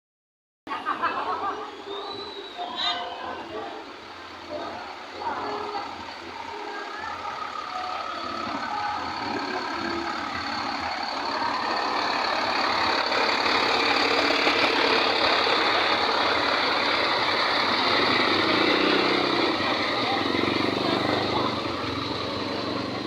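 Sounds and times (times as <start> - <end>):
bus horns blaring: 1.7 - 4.1.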